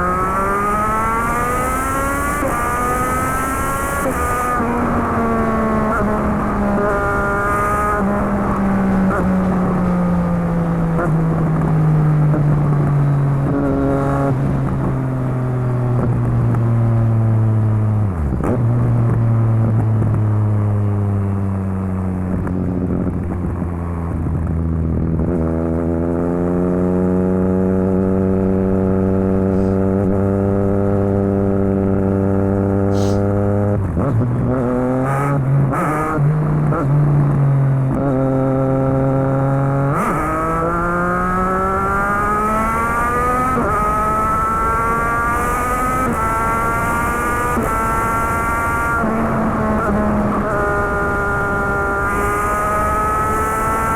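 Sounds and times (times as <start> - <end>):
motorcycle engine running: 4.6 - 34.7.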